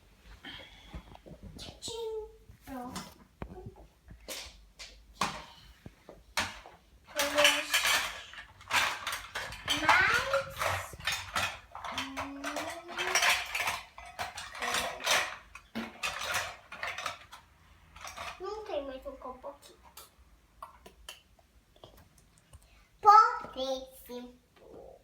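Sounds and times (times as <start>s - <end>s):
dishes clinking and clattering: 6.4s - 18.4s.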